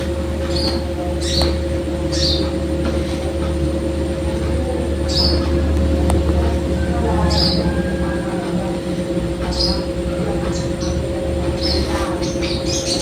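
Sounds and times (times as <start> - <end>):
loud steady low hum: 0.0 - 13.0
songbird chirping: 0.0 - 13.0.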